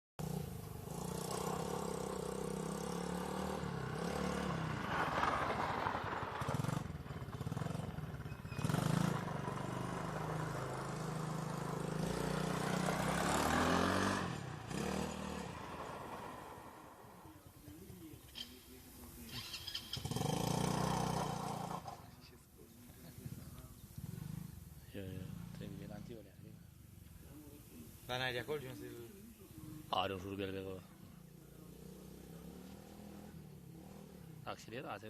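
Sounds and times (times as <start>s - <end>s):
small atv engine running: 0.2s - 26.1s.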